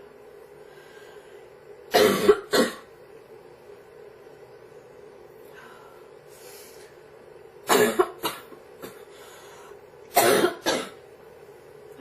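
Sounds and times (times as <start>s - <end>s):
soft breath in: 0.6s - 1.5s, 5.5s - 7.0s, 9.1s - 9.8s
girl coughing: 2.0s - 2.9s, 7.7s - 9.0s, 10.1s - 11.0s.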